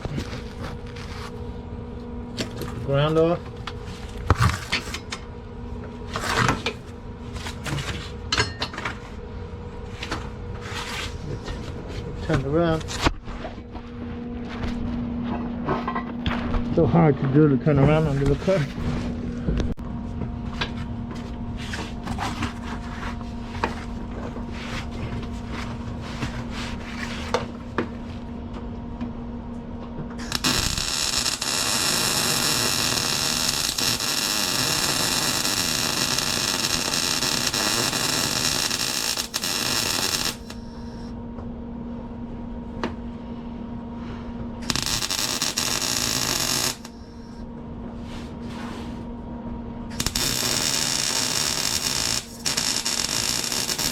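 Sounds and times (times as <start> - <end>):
steady hum: 0.0 - 53.9
welder crackling hiss: 30.2 - 40.7, 44.6 - 47.0, 49.9 - 53.9.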